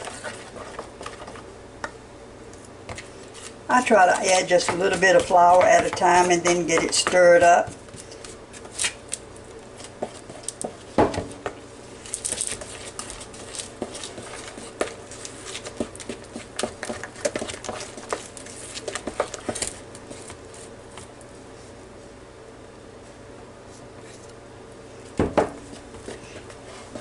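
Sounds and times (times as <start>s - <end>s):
utensil scraping and tapping bowl: 2.9s - 8.7s, 12.5s - 21.1s.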